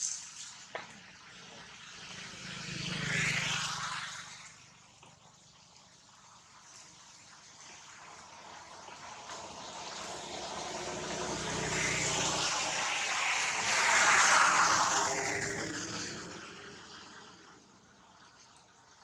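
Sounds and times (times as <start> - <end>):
vehicle passing: 1.8 - 4.6, 8.7 - 17.8.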